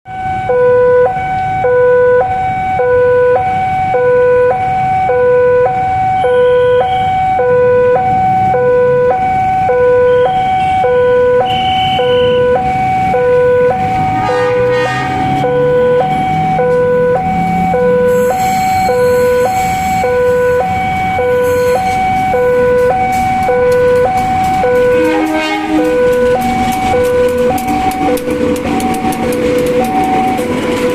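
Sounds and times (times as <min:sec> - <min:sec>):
road vehicles humming: 0:00.1 - 0:30.9
two-tone crossing warning alarm: 0:00.1 - 0:30.9
vehicle passing: 0:12.4 - 0:30.9.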